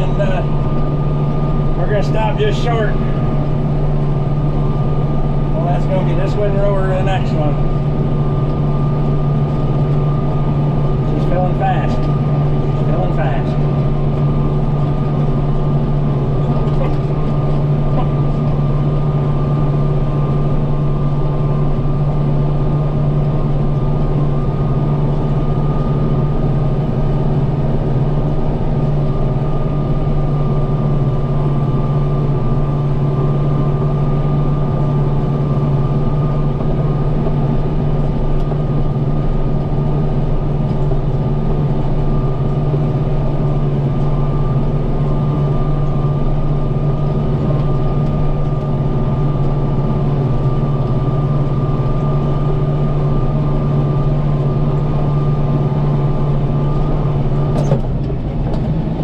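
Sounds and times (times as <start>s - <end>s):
hay baler whine: 0.0s - 57.9s
tractor engine running: 0.0s - 59.0s.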